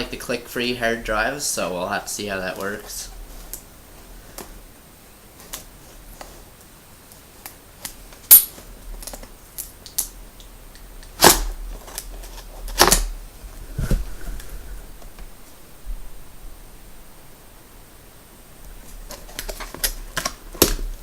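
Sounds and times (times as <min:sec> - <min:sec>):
packaging crackling and clicking: 0:18.8 - 0:21.0.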